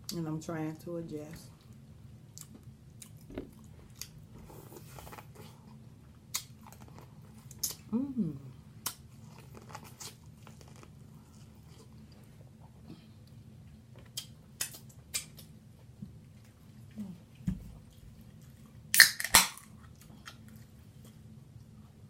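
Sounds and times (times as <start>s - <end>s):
faint low hum: 0.0s - 22.0s
crunching and smacking: 2.3s - 7.9s, 8.8s - 12.7s, 13.7s - 21.3s
chewing and biting: 8.8s - 12.2s.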